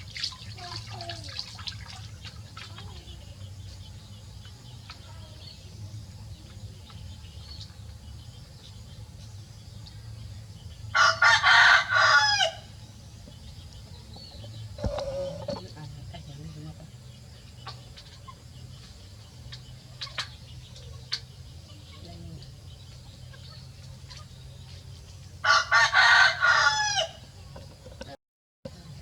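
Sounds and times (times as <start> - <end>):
faint low hum: 0.0 - 29.0
rooster crowing: 10.9 - 12.7, 25.4 - 27.3.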